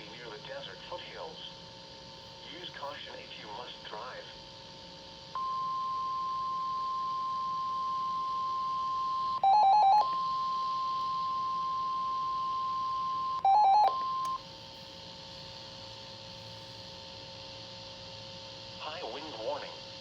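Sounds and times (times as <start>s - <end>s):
steady warning alarm tone: 5.4s - 14.4s.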